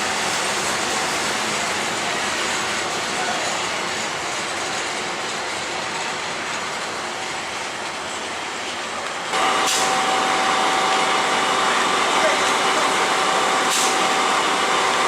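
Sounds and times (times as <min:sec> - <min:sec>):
train rolling on rails: 0:00.0 - 0:15.0.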